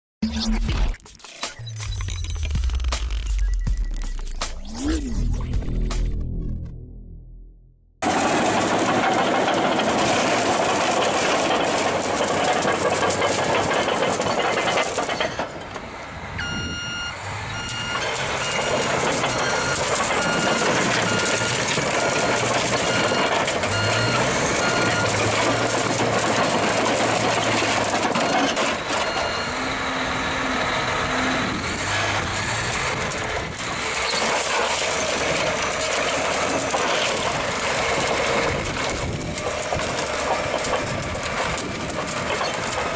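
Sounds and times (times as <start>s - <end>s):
diesel engine and machinery: 0.3s - 42.9s
reversing alarm beeping: 1.6s - 5.8s, 16.4s - 25.9s, 28.1s - 30.1s.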